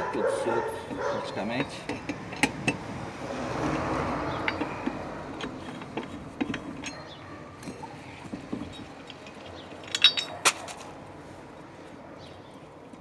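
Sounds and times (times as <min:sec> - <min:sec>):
wrench metallic clicks and clinks: 0:04.3 - 0:10.9.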